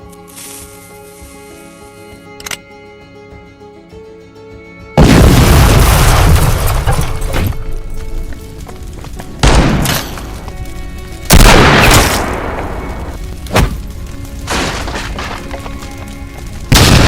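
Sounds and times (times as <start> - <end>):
background music: 0.0 - 17.0.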